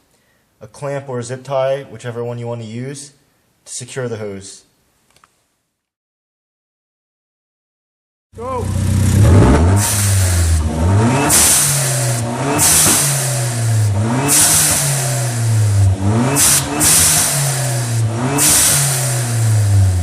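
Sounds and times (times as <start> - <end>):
car engine revving: 8.4 - 20.0
blow-off valve hissing: 16.3 - 19.8.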